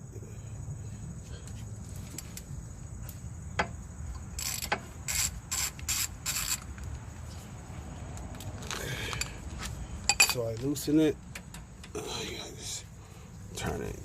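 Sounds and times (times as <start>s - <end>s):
ratchet clicking: 4.1s - 6.7s.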